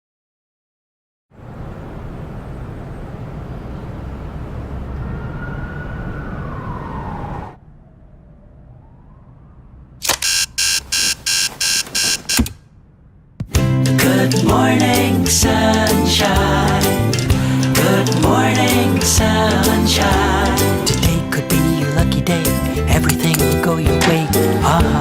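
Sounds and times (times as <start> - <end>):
steady rumbling noise: 1.4 - 11.0, 12.3 - 21.6
siren sliding down in pitch: 4.7 - 12.2
rapid loud beeping: 10.0 - 12.5.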